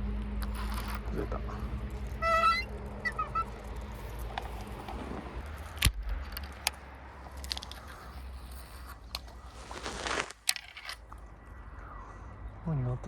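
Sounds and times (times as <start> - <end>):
steady low rumble: 0.0 - 9.5
bird call: 2.0 - 5.4.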